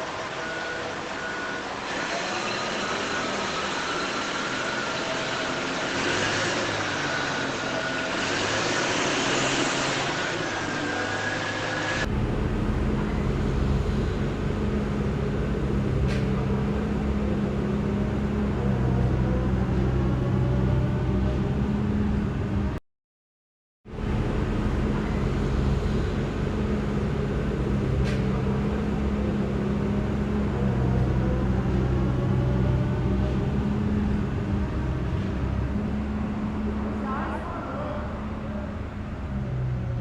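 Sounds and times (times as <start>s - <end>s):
toy motors and gearboxes whining: 0.0s - 19.7s
deep steady hum: 12.0s - 22.8s, 23.9s - 40.0s.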